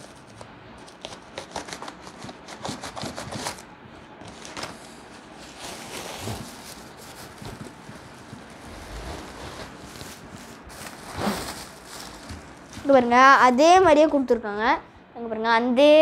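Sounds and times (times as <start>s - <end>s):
packaging rustling: 4.2s - 13.4s.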